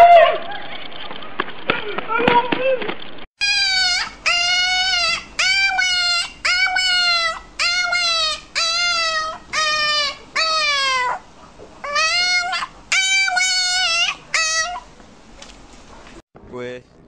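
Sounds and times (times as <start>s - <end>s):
dog high-pitched calls: 3.4s - 14.9s.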